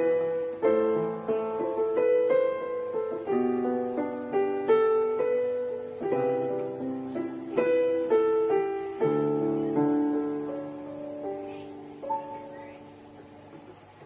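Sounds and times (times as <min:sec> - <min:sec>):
slow piano piece: 0:00.0 - 0:14.0.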